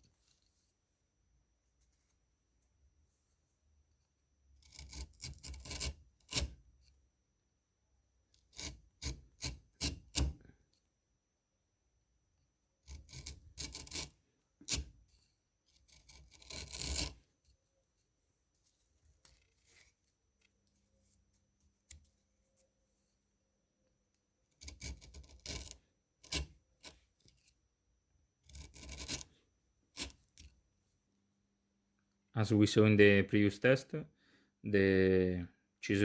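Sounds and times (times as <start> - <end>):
chisel scraping strokes: 4.6 - 6.5, 12.9 - 17.5, 18.6 - 20.1, 28.5 - 29.4, 30.0 - 30.5.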